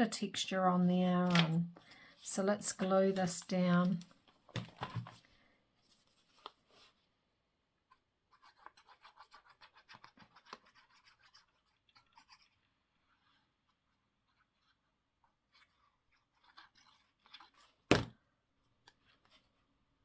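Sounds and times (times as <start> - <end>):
scratchy rubbing over paper: 8.3 - 14.9.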